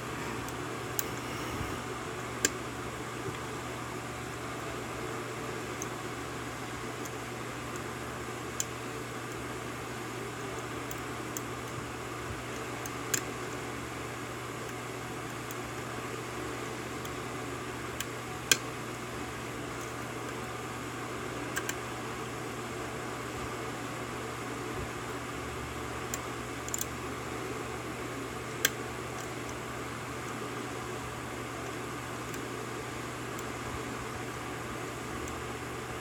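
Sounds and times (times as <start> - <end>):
low hum: 0.0 - 2.5.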